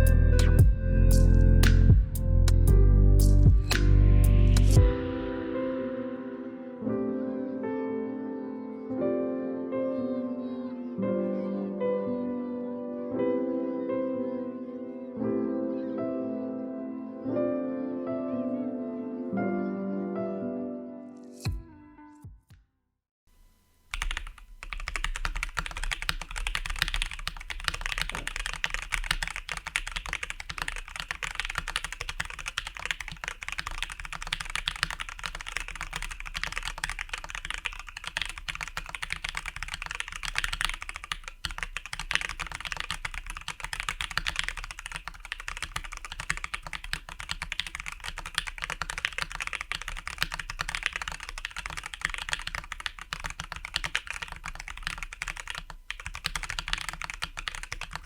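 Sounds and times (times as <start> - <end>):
mechanical keyboard typing: 23.9 - 58.0.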